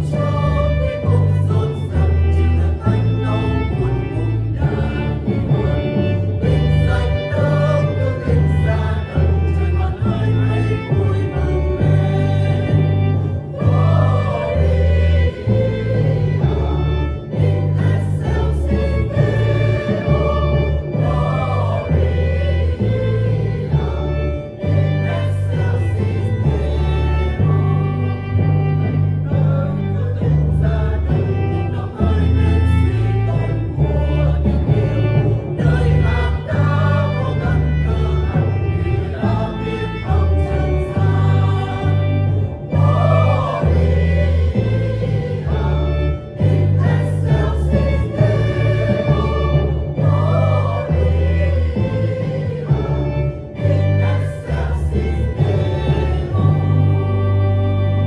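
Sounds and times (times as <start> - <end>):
bass line: 0.0 - 58.0
church choir singing a hymn: 0.0 - 58.0
instrumental accompaniment: 0.0 - 58.0
sustained string-like chords: 0.0 - 58.0.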